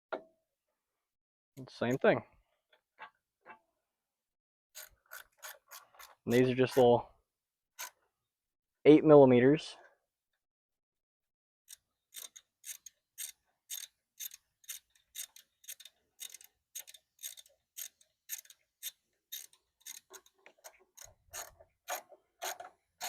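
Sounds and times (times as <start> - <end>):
ratchet wrench clicking: 11.7 - 22.7.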